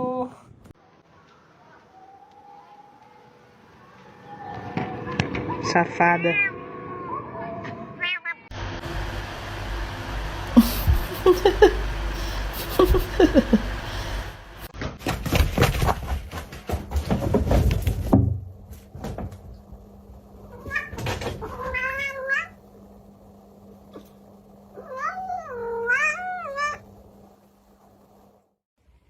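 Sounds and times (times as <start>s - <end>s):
cat meowing: 7.1s - 8.5s, 20.5s - 22.6s, 24.8s - 26.8s
clattering and knocking: 14.8s - 19.5s.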